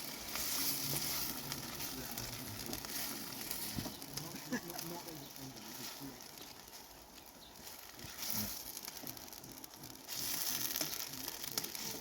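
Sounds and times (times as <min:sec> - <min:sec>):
food sizzling in a frying pan: 0:00.0 - 0:12.0.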